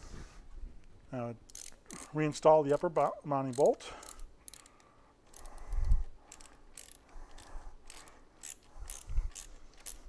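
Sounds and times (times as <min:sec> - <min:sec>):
socket ratchet clicking: 0:01.5 - 0:02.1, 0:02.7 - 0:10.0.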